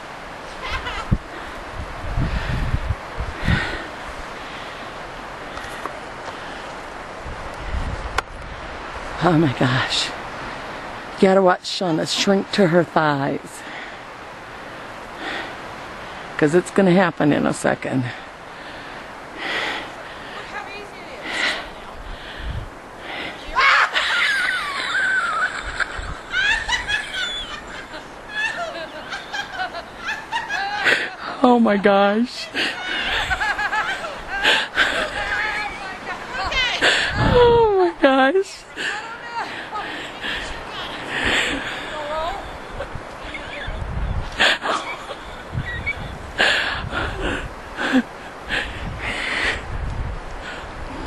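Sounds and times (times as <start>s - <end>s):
woman laughing: 0.5s - 1.2s, 23.5s - 31.5s, 32.4s - 48.1s.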